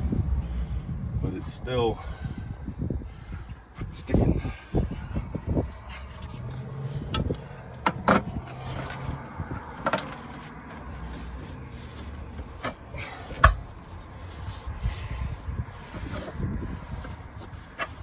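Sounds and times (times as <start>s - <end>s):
knocks and clanks on tire rim: 7.0s - 13.9s.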